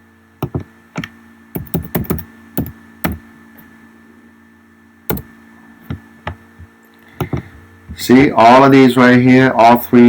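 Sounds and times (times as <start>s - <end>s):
laptop keys and trackpad clicking: 0.4s - 0.7s, 1.6s - 3.2s.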